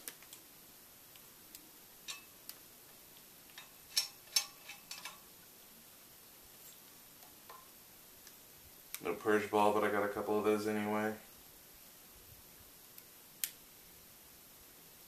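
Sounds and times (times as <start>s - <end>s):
hard parts clicking: 3.5s - 5.3s.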